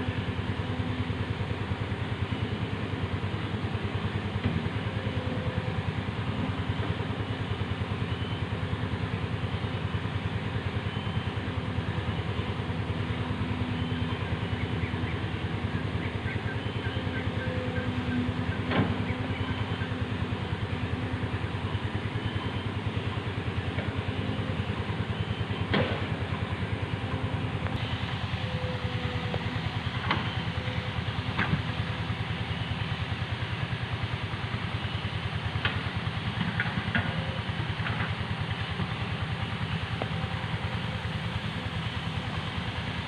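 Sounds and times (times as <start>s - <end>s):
diesel engine running: 0.0s - 43.0s.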